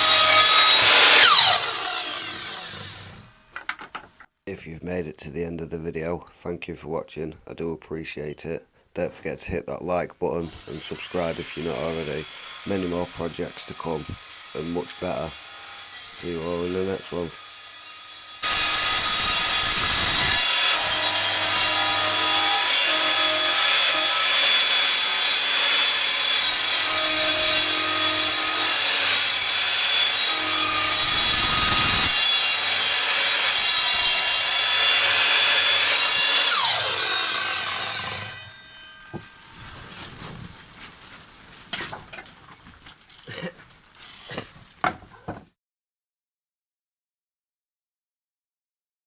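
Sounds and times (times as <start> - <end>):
mitre saw cutting wood: 0.0 - 3.9, 10.3 - 45.4.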